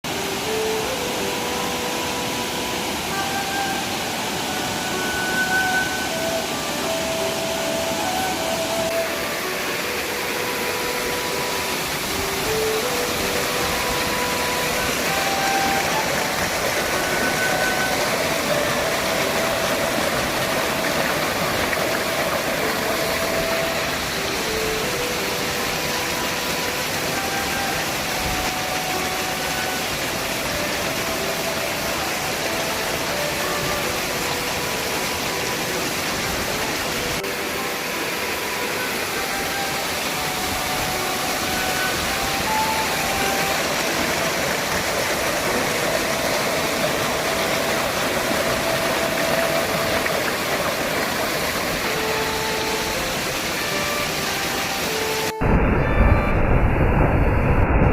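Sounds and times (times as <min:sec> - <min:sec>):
waterfall rushing: 0:00.0 - 0:57.9.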